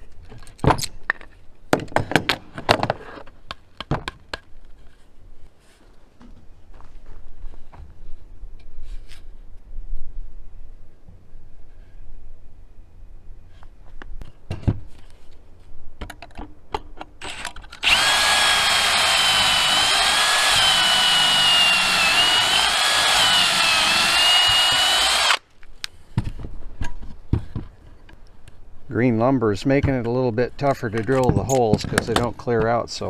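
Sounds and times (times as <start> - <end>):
power drill boring into wood: 17.2 - 25.4.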